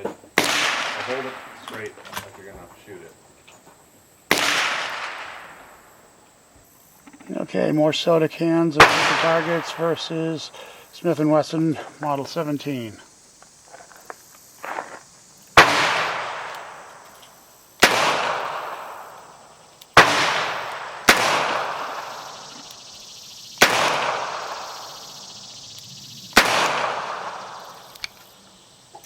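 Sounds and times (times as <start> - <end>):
revolver shots with echo: 20.0 - 22.2.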